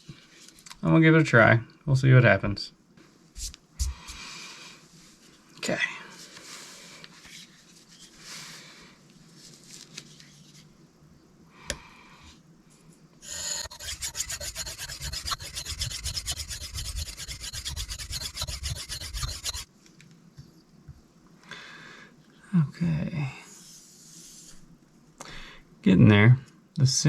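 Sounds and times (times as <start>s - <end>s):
knife scraping on sharpening plate: 13.3s - 19.7s.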